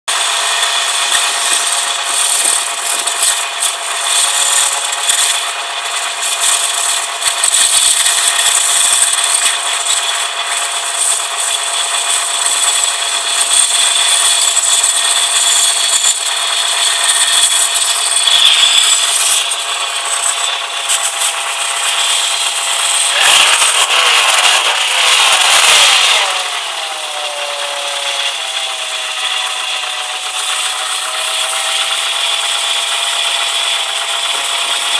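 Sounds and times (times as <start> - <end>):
vehicle squeak: 13.6 - 29.4.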